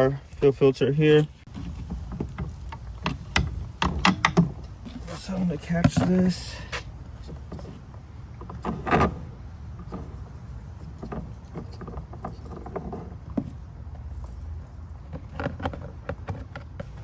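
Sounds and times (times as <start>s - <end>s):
low steady rumble: 0.0s - 17.0s
tools clicking and knocking: 2.0s - 5.0s.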